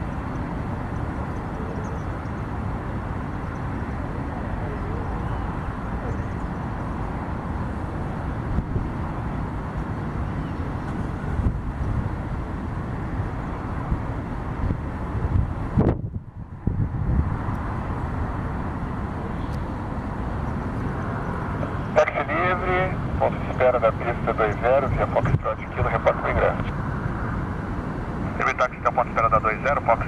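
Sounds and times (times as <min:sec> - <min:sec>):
low rumble of airport noise: 0:00.0 - 0:30.0
wind buffeting microphone: 0:00.0 - 0:30.0.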